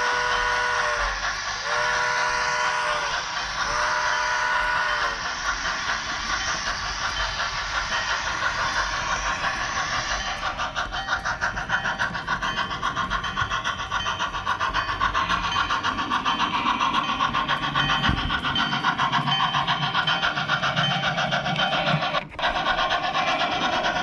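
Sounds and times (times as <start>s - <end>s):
model train wheels whirring: 0.0s - 24.0s
rapid even clicking: 5.0s - 24.0s.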